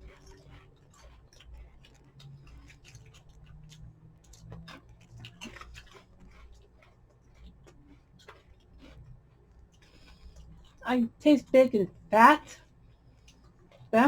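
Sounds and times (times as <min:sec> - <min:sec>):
potato chips being chewed: 0:00.0 - 0:10.8
low steady hum: 0:00.0 - 0:14.0.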